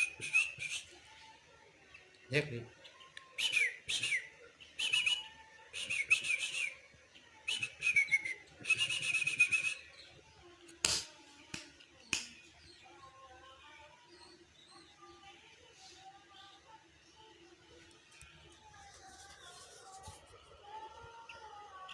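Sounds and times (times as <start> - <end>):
songbird whistling: 0.0 - 0.9, 3.4 - 6.8, 7.4 - 10.1.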